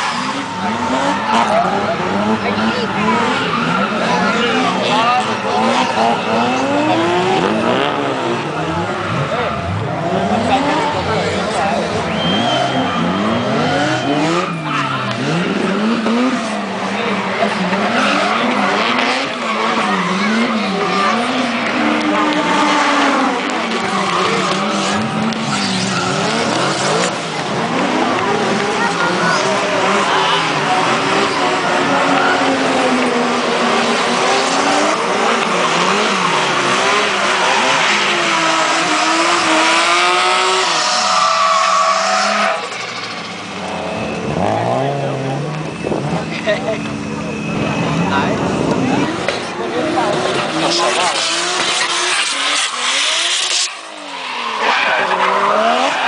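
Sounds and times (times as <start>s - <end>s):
car engine revving hard: 0.0s - 56.0s
tyres skidding: 0.0s - 56.0s
tyres squealing: 33.7s - 46.2s.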